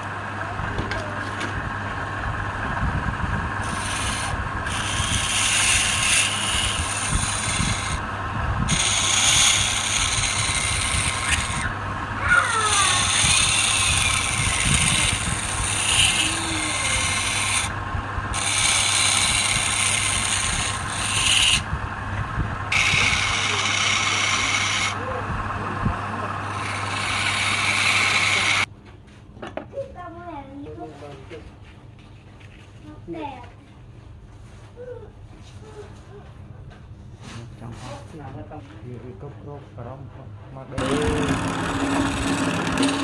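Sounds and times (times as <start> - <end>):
wood lathe motor hum: 1.7 - 28.7, 40.8 - 43.0
scraping spinning wood: 3.0 - 28.7, 40.8 - 43.0.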